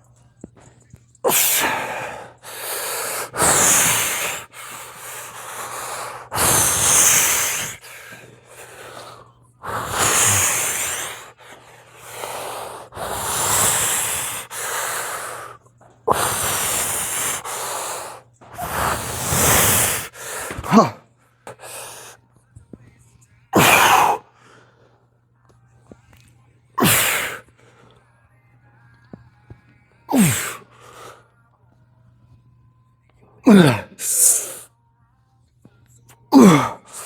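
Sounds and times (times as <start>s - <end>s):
man breathing hard: 1.2s - 22.2s, 23.6s - 25.0s, 30.1s - 31.3s.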